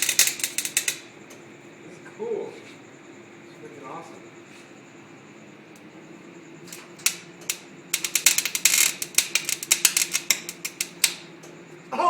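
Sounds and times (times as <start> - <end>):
welding arc crackling and popping: 0.0 - 1.2, 6.6 - 11.6.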